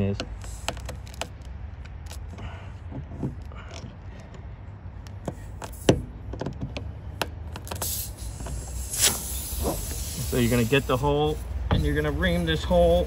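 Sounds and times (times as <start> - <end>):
air hissing from tire: 0.4 - 0.9, 5.3 - 6.2, 7.6 - 13.0.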